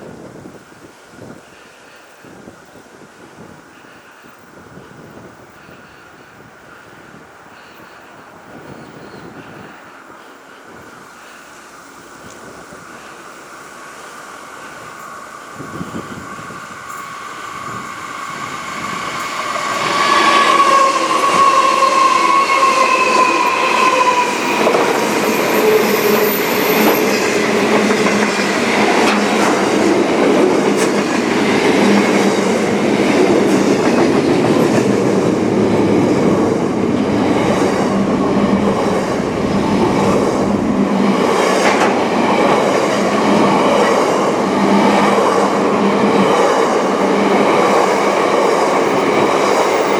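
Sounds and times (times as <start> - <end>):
train rumbling on rails: 0.0 - 49.9
high squealing tone: 16.9 - 27.7.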